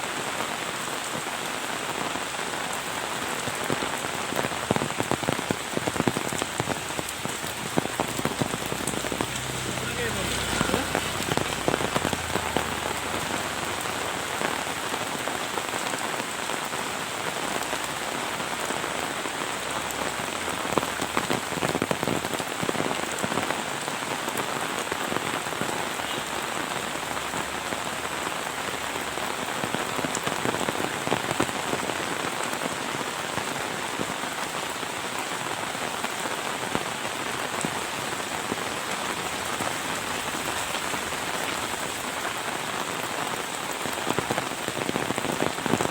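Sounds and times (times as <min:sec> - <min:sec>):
heavy rain falling: 0:00.0 - 0:45.9.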